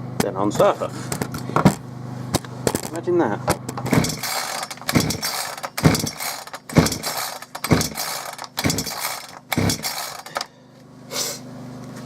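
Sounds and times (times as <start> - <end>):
chainsaw starter cord yanks: 3.7 - 10.5
engine cranking rasp: 3.8 - 10.5.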